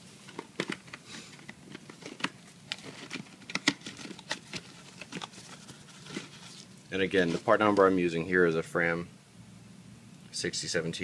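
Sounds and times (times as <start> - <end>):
oil filter and cardboard box handled: 0.2 - 8.0.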